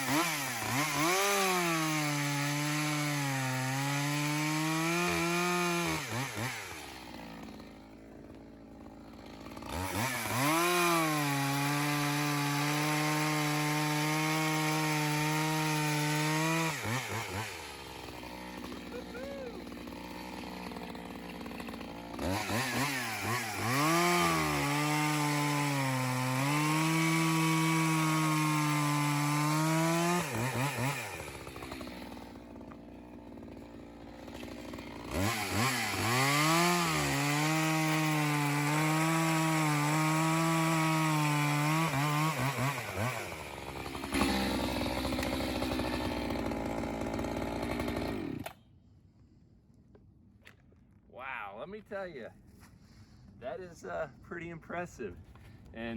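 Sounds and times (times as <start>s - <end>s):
chainsaw idling and revving: 0.0s - 48.6s.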